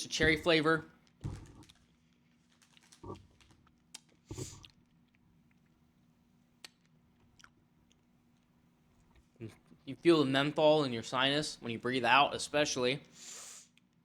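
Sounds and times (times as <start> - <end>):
mouth clicks and smacks: 6.6 - 8.1.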